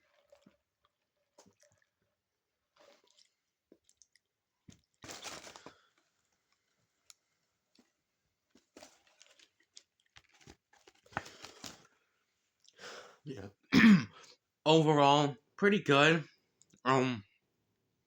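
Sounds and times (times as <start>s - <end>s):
crunchy taco chewing: 2.8s - 12.8s.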